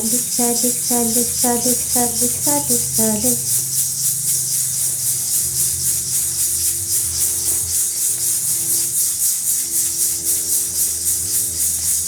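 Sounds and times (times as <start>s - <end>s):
low held tones: 0.0s - 3.5s
hand rattle shaken: 0.0s - 4.6s.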